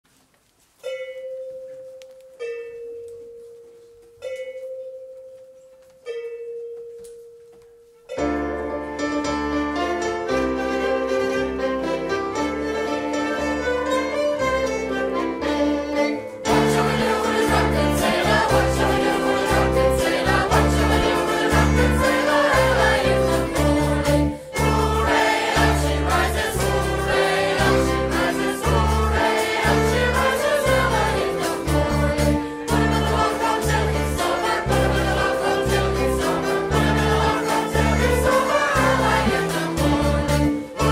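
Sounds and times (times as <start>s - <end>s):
live band playing: 9.3s - 40.9s
group singing: 16.5s - 40.9s
rhythmic bass line: 16.5s - 40.9s.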